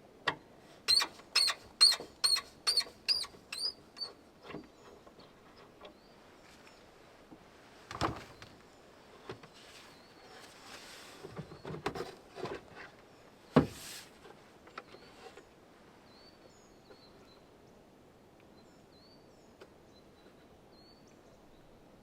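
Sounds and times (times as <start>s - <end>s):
small birds chirping: 0.9s - 6.9s
knocks and rustles: 7.9s - 8.6s.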